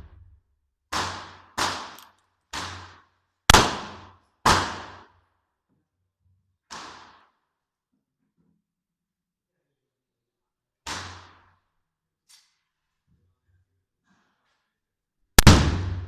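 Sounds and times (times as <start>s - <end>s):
revolver shots with echo: 15.4s - 16.0s.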